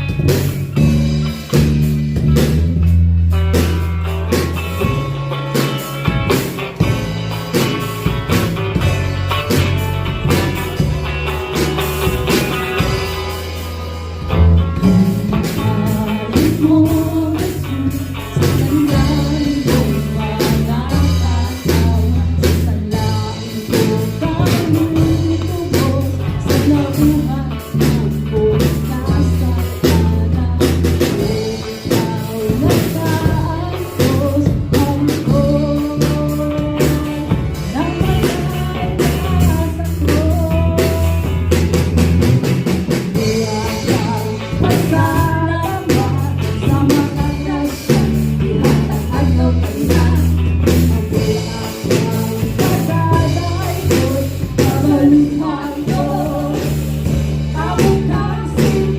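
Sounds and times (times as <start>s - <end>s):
bass guitar: 0.0s - 58.9s
drum kit: 0.0s - 58.9s
electric guitar: 0.0s - 58.9s
person singing: 14.4s - 41.8s, 43.1s - 58.9s.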